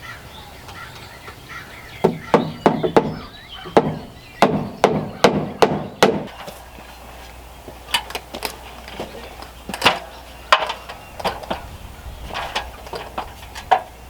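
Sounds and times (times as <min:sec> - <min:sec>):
hammer knocking on wood: 0:02.0 - 0:06.4.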